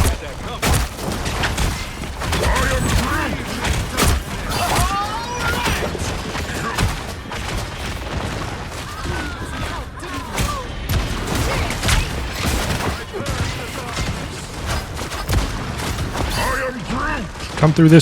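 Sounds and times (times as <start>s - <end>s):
blasts: 0.0s - 18.0s
video game gunfire: 0.0s - 18.0s.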